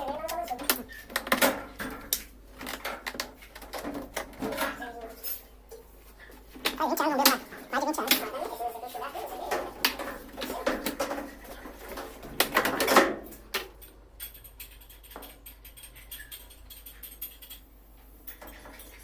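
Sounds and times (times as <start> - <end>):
knocks and clatter of parts: 0.0 - 5.5, 9.5 - 19.0.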